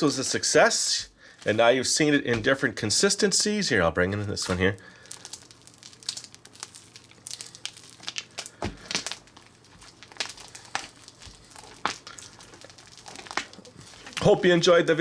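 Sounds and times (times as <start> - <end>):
slime squelching by hand: 4.1 - 14.6.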